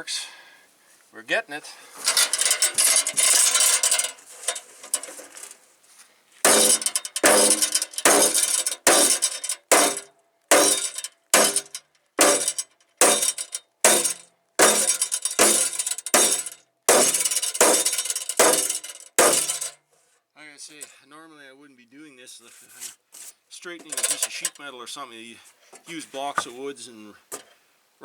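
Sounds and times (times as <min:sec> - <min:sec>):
metal clatter: 0:02.0 - 0:05.6, 0:06.4 - 0:19.8, 0:22.8 - 0:24.6
sledgehammer clanging on metal: 0:02.0 - 0:05.6, 0:06.4 - 0:19.8, 0:23.8 - 0:24.6.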